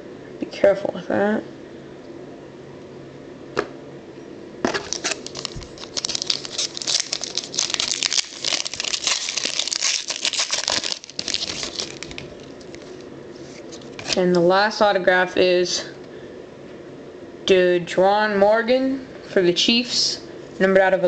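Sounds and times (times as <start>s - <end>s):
plastic packaging crinkling: 4.7s - 14.2s.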